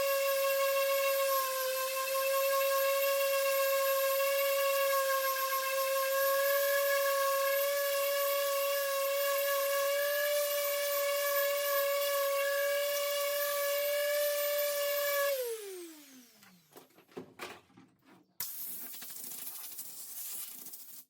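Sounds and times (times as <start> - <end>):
high-speed motor whining: 0.1 - 16.7.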